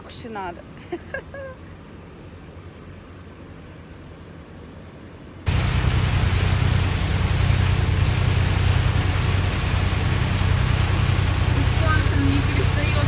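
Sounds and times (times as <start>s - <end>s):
low road rumble: 5.5s - 13.0s
vehicle driving in rain: 5.5s - 13.0s.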